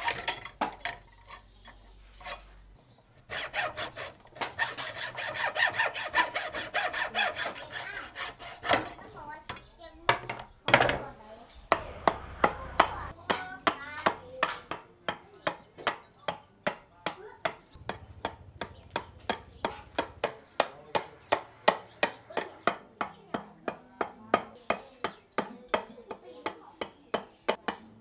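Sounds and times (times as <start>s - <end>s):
hammering on wood: 3.3s - 11.0s, 11.7s - 28.0s.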